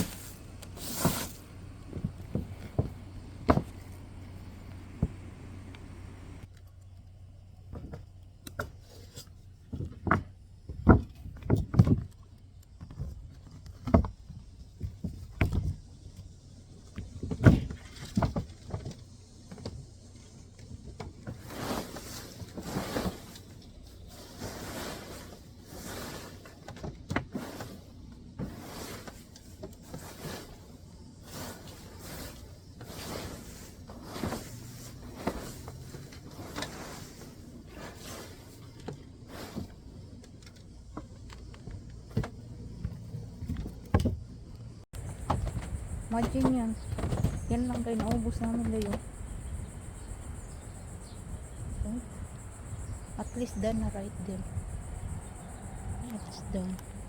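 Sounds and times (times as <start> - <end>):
rustling scraping of dead leaves: 0.0 - 2.8, 21.4 - 26.6, 27.3 - 40.0.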